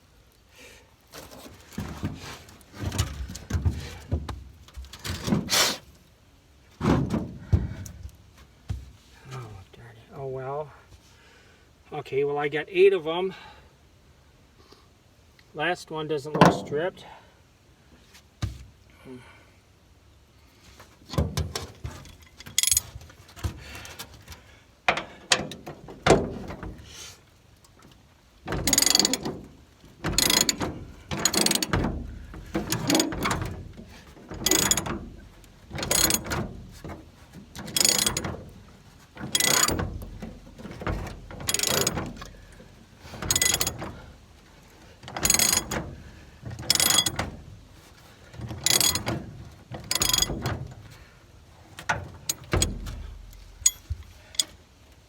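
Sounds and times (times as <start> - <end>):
ratchet wrench clicking: 22.5 - 22.8, 28.6 - 29.3, 30.2 - 30.6, 31.2 - 31.7, 32.7 - 33.3, 34.4 - 34.9, 35.8 - 36.3, 37.7 - 38.3, 39.3 - 39.8, 41.4 - 42.0, 43.3 - 43.8, 45.2 - 45.8, 46.7 - 47.2, 48.6 - 49.1, 49.9 - 50.4.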